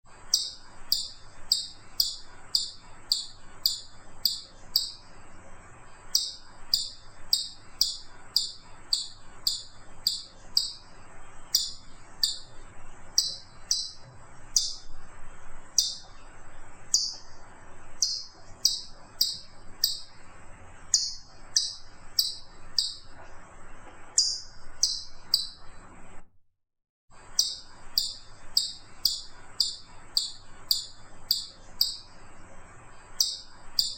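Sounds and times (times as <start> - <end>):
chipmunk chirping: 0.2 - 5.1, 6.1 - 10.9, 11.5 - 14.9, 15.7 - 16.1, 16.9 - 17.3, 18.0 - 20.2, 20.9 - 23.1, 24.2 - 25.6, 27.3 - 32.1, 33.2 - 33.9.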